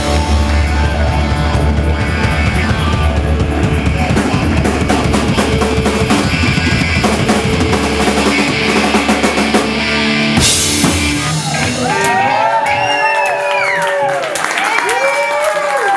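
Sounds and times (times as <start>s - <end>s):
live rock band playing: 0.0s - 12.6s
audience whooping and cheering: 11.1s - 15.9s.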